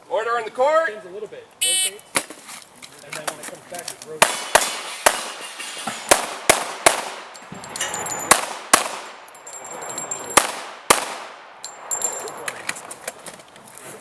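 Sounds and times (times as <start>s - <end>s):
handgun shots echoing: 4.2s - 5.4s, 6.1s - 7.4s, 10.4s - 11.4s
steel targets ringing: 7.4s - 8.4s.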